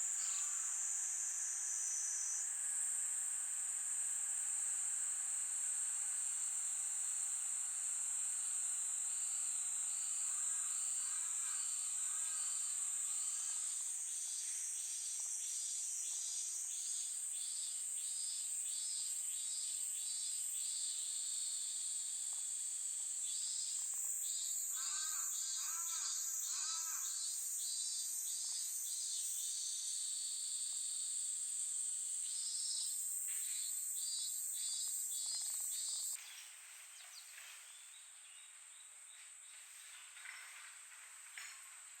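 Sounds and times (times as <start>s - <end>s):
insect high-pitched trill: 23.2s - 31.0s, 32.2s - 36.4s.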